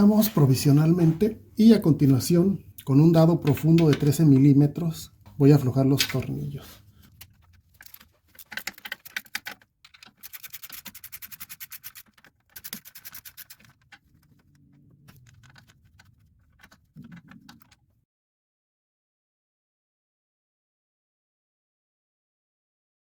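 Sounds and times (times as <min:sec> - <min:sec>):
ratchet wrench clicking: 0:10.2 - 0:13.7.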